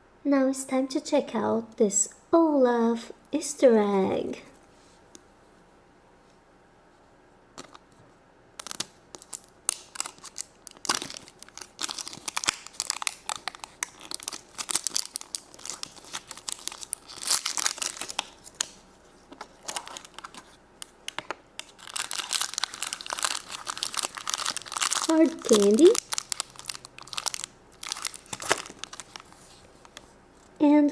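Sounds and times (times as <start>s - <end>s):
wrapper crinkling and tearing: 8.6s - 30.2s.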